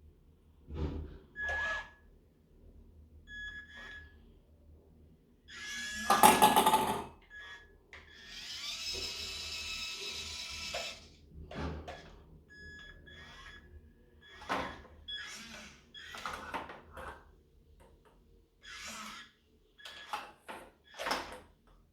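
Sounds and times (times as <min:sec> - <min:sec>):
toy excavator motors whirring: 0:05.5 - 0:11.2, 0:11.8 - 0:17.2, 0:18.6 - 0:21.3.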